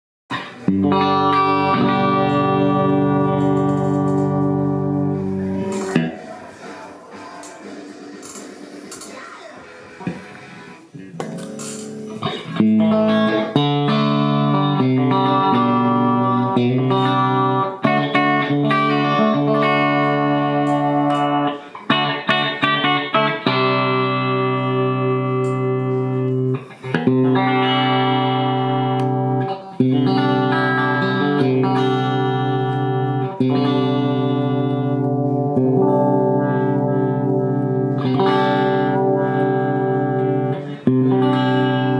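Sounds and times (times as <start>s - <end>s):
electric guitar through amplifier: 0.3s - 41.9s.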